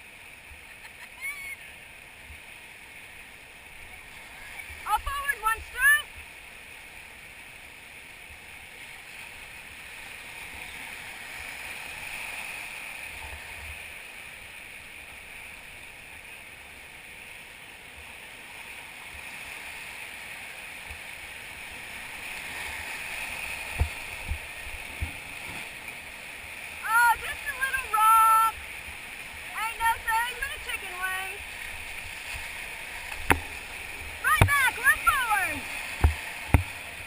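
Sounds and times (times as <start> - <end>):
whitewater rushing: 20.0 - 37.0
sharp knocks: 33.2 - 33.5, 36.0 - 36.8.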